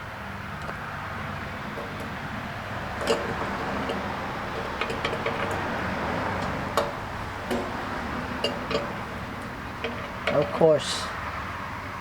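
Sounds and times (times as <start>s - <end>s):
light metal clinks and knocks: 1.7s - 11.1s.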